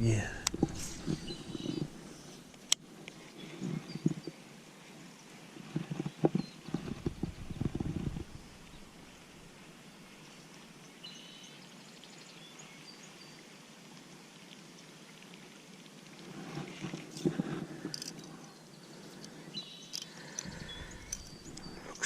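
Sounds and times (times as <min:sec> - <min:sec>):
small birds chirping: 0:00.0 - 0:02.3, 0:06.4 - 0:09.5, 0:18.0 - 0:22.0
riverside ambience: 0:00.0 - 0:04.3, 0:06.7 - 0:10.0, 0:17.1 - 0:22.0
knocks and rustling: 0:05.7 - 0:08.4.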